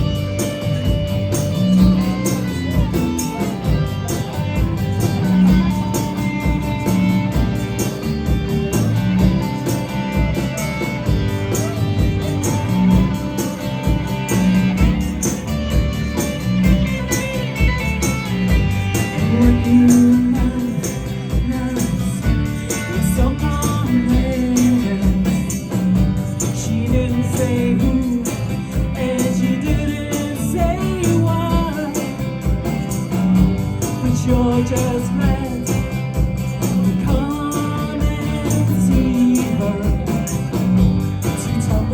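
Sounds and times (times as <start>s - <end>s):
bass: 0.0s - 41.9s
drums: 0.0s - 41.9s
strummed guitars: 0.0s - 41.9s
person singing: 18.6s - 32.6s, 33.9s - 36.3s, 37.0s - 41.9s.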